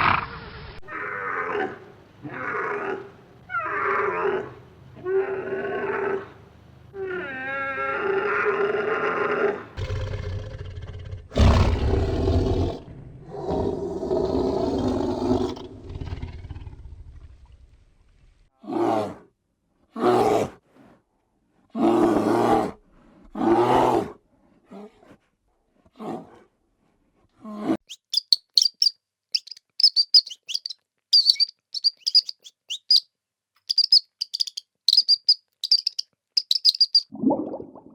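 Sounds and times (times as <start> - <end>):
animal calls: 27.9 - 33.0, 33.7 - 37.0.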